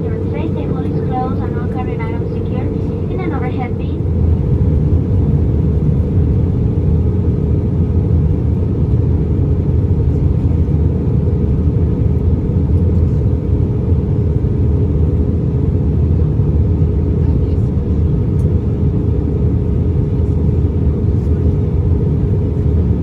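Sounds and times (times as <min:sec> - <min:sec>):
faint steady hum: 0:00.0 - 0:06.5
airliner cabin engine and airflow noise: 0:00.0 - 0:23.0.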